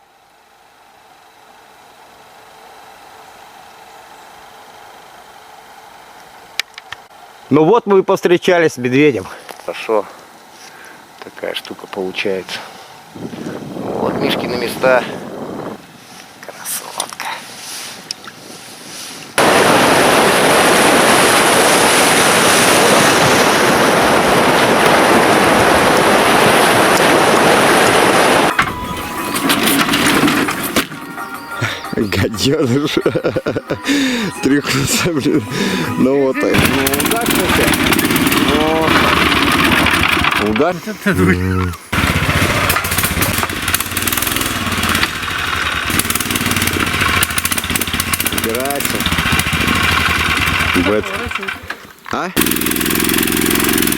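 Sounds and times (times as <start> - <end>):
outboard motor running: 19.4 - 53.9.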